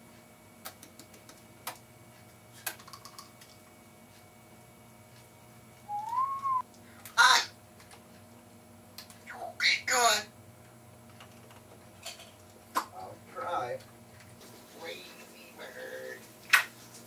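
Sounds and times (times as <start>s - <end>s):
parrot whistle: 5.9s - 6.6s.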